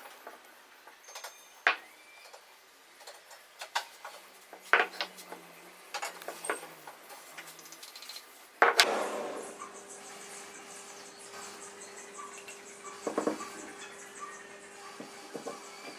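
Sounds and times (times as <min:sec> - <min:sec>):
wooden pieces clicking and knocking: 0:03.0 - 0:08.9.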